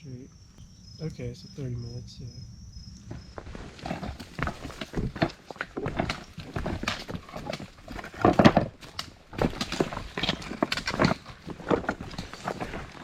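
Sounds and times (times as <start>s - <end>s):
footsteps crunching on trail: 3.0s - 13.0s.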